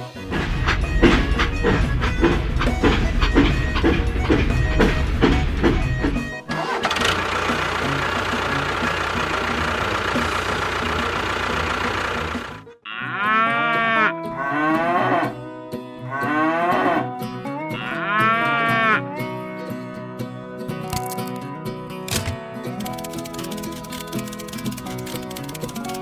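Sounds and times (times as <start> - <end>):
small engine running: 0.0 - 12.8, 22.1 - 26.0
cow mooing: 12.8 - 15.4, 16.1 - 17.1, 17.8 - 19.0.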